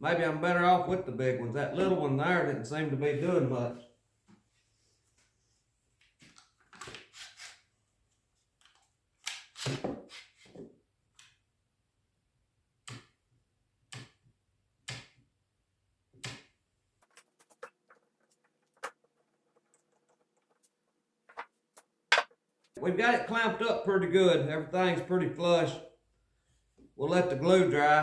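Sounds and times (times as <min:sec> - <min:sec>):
clamps knocking and rattling: 0:22.1 - 0:22.3.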